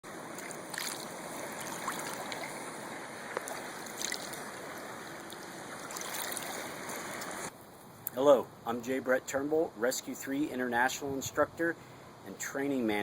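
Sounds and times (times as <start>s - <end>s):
stream water flowing: 0.0s - 7.5s
faint small splashes: 0.3s - 7.5s.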